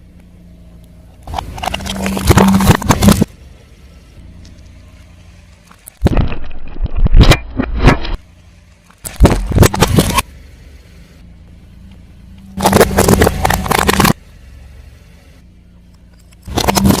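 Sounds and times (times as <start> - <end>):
car engine hum: 0.0 - 17.0
tyre crushing crunchy objects: 1.2 - 3.3, 12.6 - 14.2, 16.5 - 17.0.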